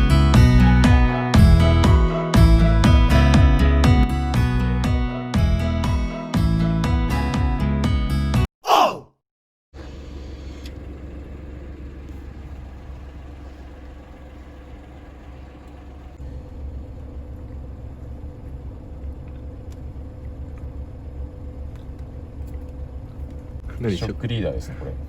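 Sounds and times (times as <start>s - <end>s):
car rumble inside cabin: 9.8s - 25.0s.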